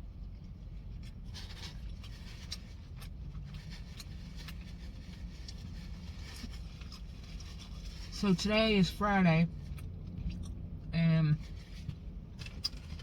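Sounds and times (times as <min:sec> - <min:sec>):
low hum inside car: 0:00.0 - 0:13.0
person chewing: 0:00.9 - 0:08.0, 0:09.6 - 0:10.7.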